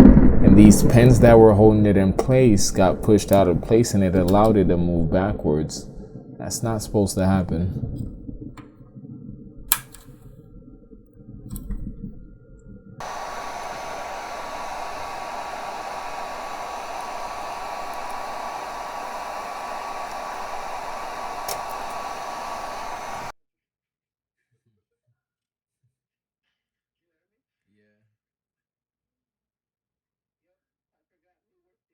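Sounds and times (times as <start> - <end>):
hot air blower hissing: 0.8 - 4.6, 13.0 - 23.3
sharp click: 13.0 - 23.3.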